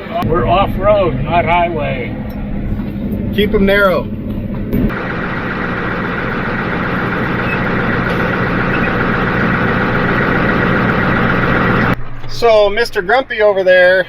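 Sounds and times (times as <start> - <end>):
truck engine and road noise: 0.0 - 14.0
faint steady whine: 4.9 - 14.0.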